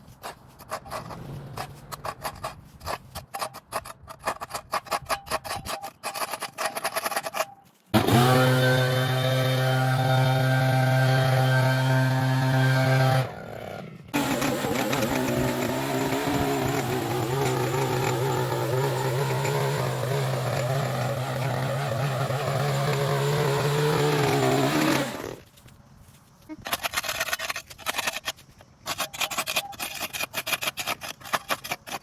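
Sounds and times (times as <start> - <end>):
small gasoline engine running: 7.9 - 25.4.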